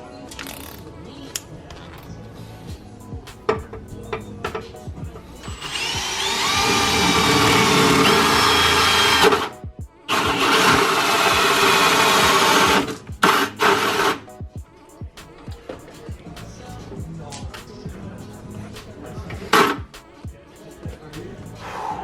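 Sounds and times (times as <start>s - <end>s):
power drill boring: 5.5s - 9.5s, 10.1s - 14.2s.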